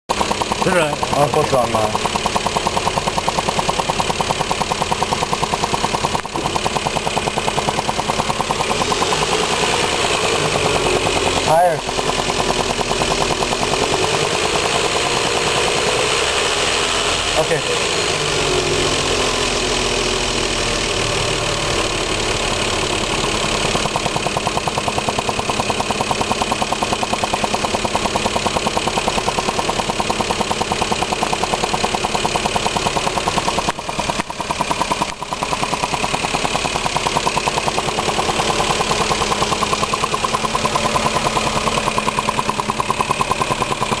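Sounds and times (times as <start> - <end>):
car engine idling: 0.1 - 44.0
fast even engine pulsing: 0.1 - 44.0.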